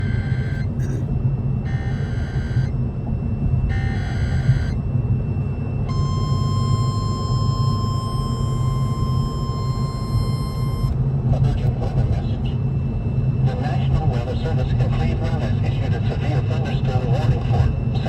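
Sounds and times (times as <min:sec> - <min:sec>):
warbling data tones: 0:00.0 - 0:00.8, 0:01.7 - 0:02.8, 0:03.7 - 0:04.8, 0:05.9 - 0:11.0
steady attention tone: 0:00.0 - 0:01.0, 0:01.6 - 0:11.0
low rumble: 0:00.0 - 0:17.9.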